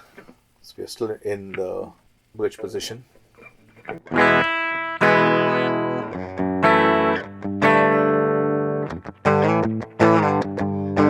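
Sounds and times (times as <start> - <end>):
clean electric guitar chords: 3.7 - 11.0.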